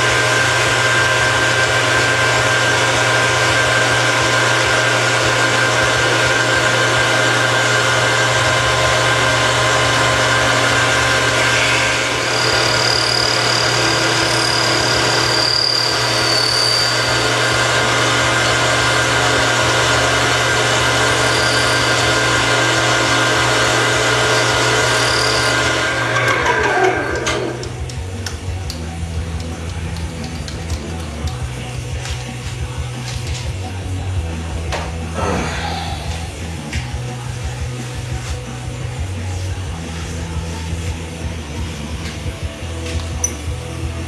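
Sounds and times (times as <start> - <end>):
metal lathe running: 0.0 - 28.0
cutting tool squealing: 11.2 - 17.6, 20.6 - 23.0, 24.0 - 27.8.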